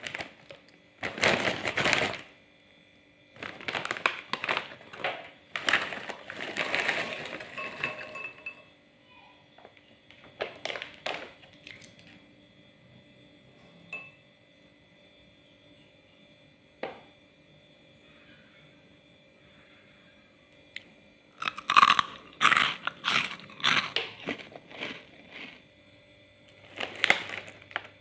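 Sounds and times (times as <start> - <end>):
plastic snack packet crinkling: 0.0 - 2.3, 3.4 - 8.0, 10.1 - 12.2, 21.4 - 25.6, 26.5 - 28.0.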